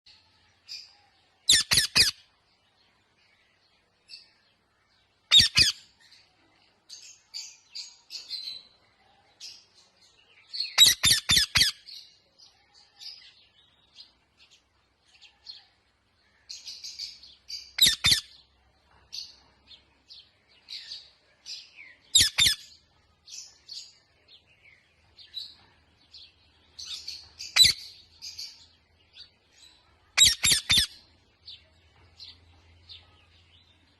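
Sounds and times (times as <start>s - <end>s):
parrot chirping and chatter: 0.1s - 4.4s, 5.1s - 33.9s
parrot squawking: 1.5s - 2.2s, 5.3s - 5.8s, 10.8s - 11.8s, 17.8s - 18.3s, 22.1s - 22.6s, 30.2s - 31.0s.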